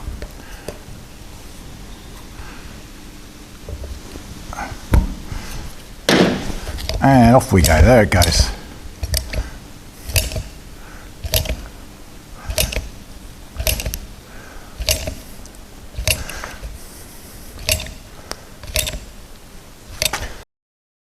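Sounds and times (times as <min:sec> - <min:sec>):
sealant gun trigger clicks: 0:07.6 - 0:10.6, 0:11.2 - 0:11.8, 0:12.5 - 0:13.0, 0:13.6 - 0:14.1, 0:14.8 - 0:16.8, 0:17.6 - 0:19.2.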